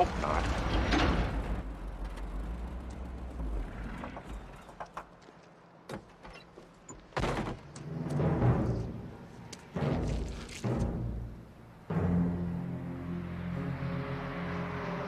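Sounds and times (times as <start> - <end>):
truck engine rumbling: 0.0 - 5.2.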